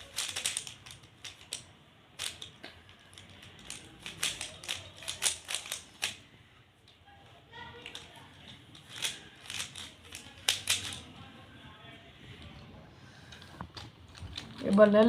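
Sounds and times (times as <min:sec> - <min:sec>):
plastic puzzle cube clicks: 0:00.0 - 0:06.2, 0:07.8 - 0:11.0.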